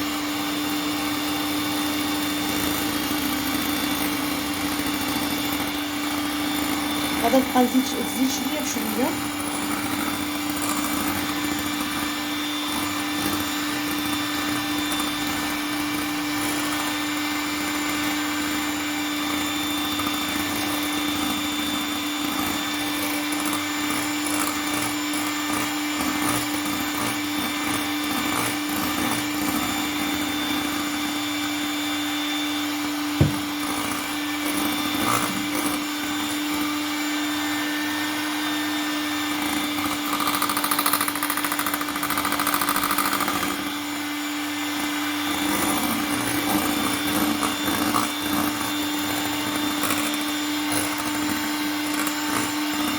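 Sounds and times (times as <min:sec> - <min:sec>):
electric mixer running: 0:00.0 - 0:52.9
sharp knock: 0:33.2 - 0:33.5.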